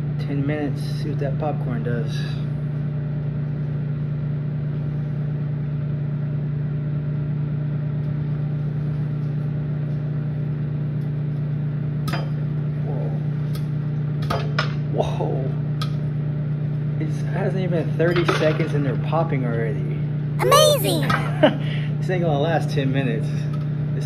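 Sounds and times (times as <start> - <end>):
microwave oven humming: 0.0 - 12.8.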